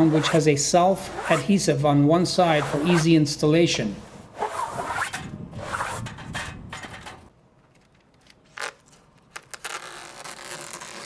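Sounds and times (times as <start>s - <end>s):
mesh rustling and rubbing: 4.3s - 7.3s.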